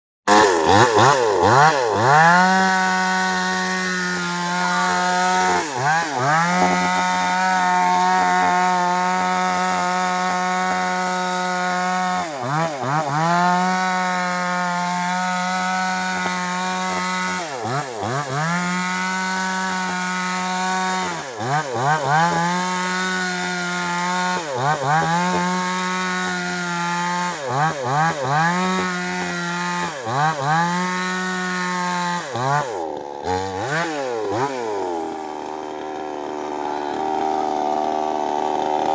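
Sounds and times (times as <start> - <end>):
chainsaw engine revving: 0.3 - 38.9.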